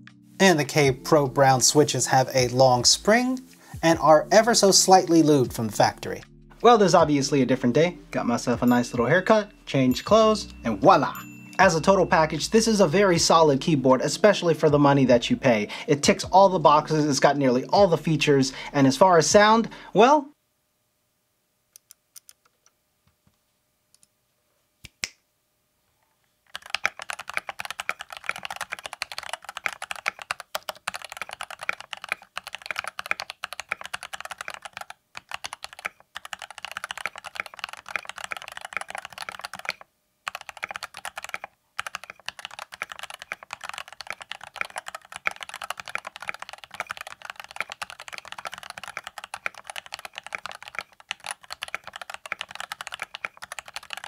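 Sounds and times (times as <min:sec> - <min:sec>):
mechanical keyboard typing: 0:26.5 - 0:54.0.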